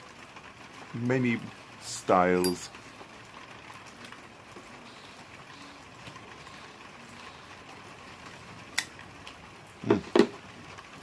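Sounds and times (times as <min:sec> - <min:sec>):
rain hissing: 0:00.0 - 0:11.0.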